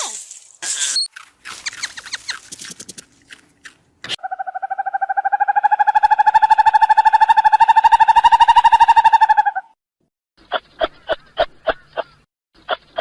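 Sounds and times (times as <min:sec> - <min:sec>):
animal chirps and clicks: 0:00.8 - 0:09.4.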